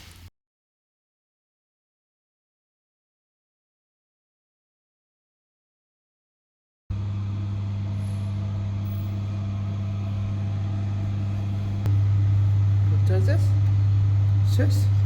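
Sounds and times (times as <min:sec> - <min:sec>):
low machine hum: 0:06.9 - 0:15.0.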